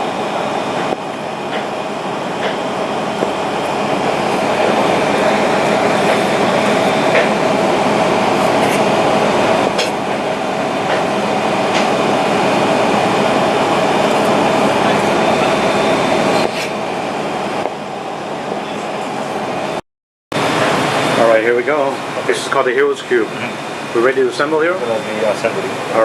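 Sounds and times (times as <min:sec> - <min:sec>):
constant hum: 0:00.0 - 0:19.8
loud rushing noise: 0:00.0 - 0:19.8
faint voices: 0:02.4 - 0:19.7.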